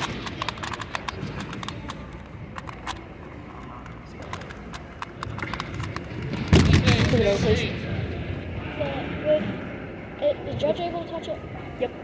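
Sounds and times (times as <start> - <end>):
plastic puzzle clicking: 0.0 - 7.2
murmur of voices: 0.0 - 12.0.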